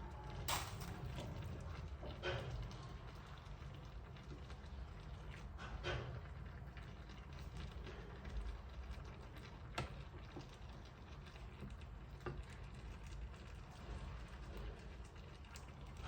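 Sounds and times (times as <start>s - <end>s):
low steady hum: 0.0s - 1.5s
dishes and utensils clinking: 0.5s - 1.4s.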